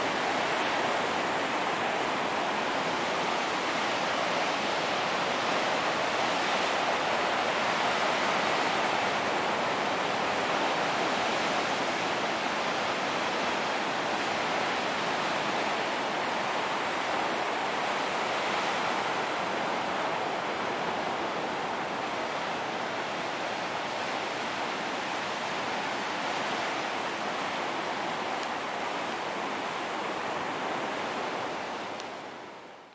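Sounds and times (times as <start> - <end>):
ocean surf on sandy beach: 0.0 - 32.9.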